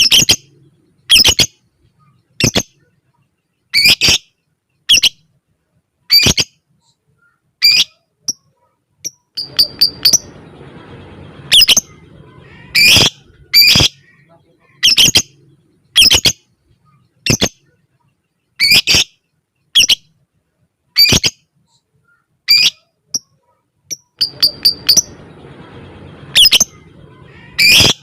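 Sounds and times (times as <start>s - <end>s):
lovebird squawking: 9.4s - 16.5s, 18.6s - 19.2s, 24.2s - 28.0s.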